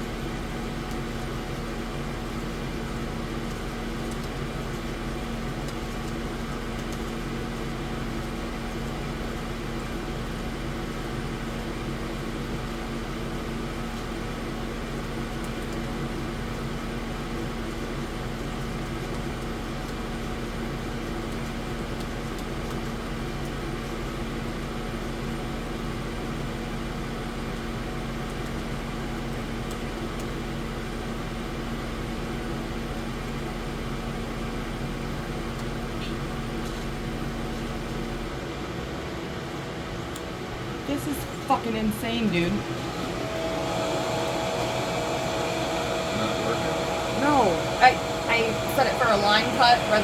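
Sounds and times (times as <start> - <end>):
laser engraver humming: 40.9 - 50.0.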